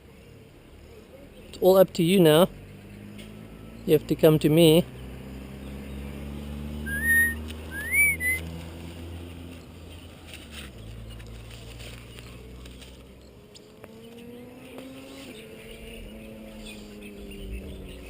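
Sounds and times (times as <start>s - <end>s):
low engine hum: 4.7s - 18.0s
short whistles: 6.9s - 8.4s.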